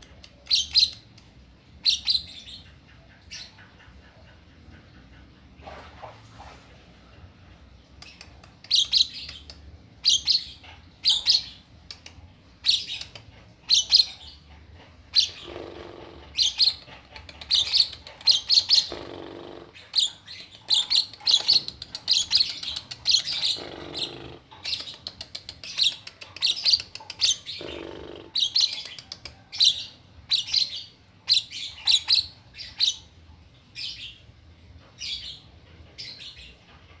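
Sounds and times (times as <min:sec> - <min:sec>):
bird chirping: 0:01.8 - 0:03.8, 0:08.0 - 0:34.3.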